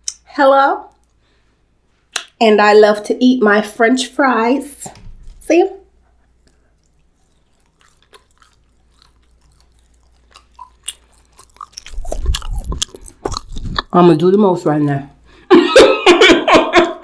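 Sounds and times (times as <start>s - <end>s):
chewing fries: 0.9s - 1.4s, 5.9s - 15.1s.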